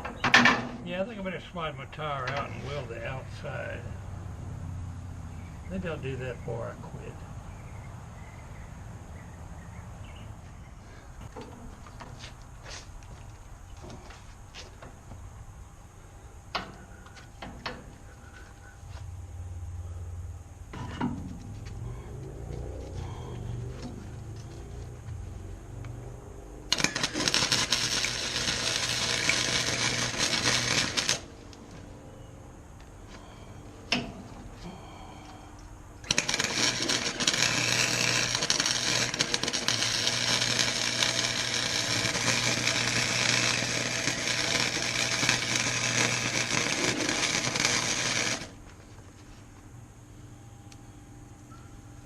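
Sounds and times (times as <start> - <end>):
low hum: 0.0 - 52.0
welding arc crackling: 26.7 - 31.6, 36.0 - 48.6.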